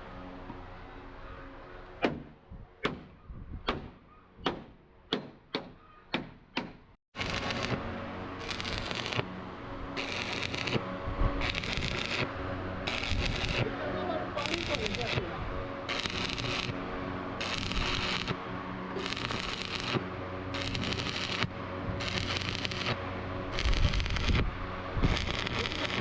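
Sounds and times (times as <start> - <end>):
harsh crackling hiss of metalworking: 8.4 - 9.3, 10.0 - 10.8, 15.9 - 16.7, 19.0 - 24.4, 25.0 - 26.0.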